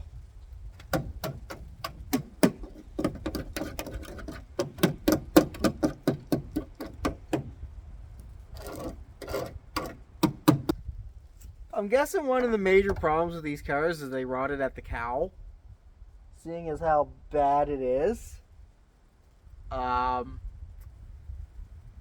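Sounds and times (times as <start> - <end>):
knocks and taps on steel: 0.8 - 7.5, 8.6 - 10.7
short scraping sounds: 0.8 - 7.5, 8.4 - 10.8.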